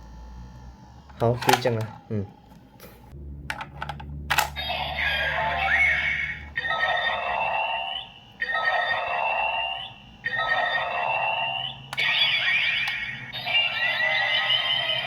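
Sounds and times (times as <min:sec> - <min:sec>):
toy device electronic sound effect: 0:04.3 - 0:15.0.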